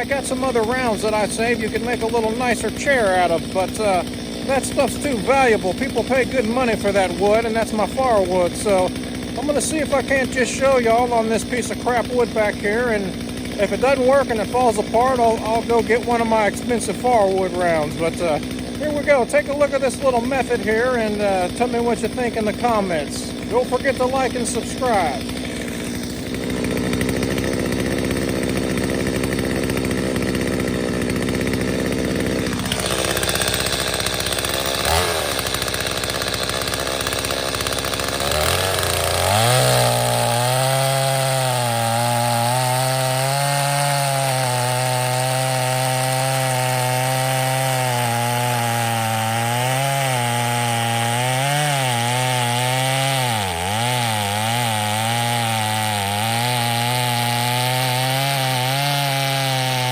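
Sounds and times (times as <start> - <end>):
chainsaw cutting log: 0.0 - 59.9.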